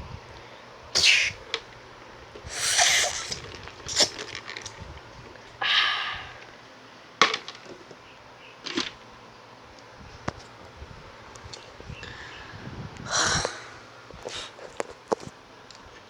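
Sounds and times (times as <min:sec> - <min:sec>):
person eating crunchy food: 0:02.5 - 0:04.8.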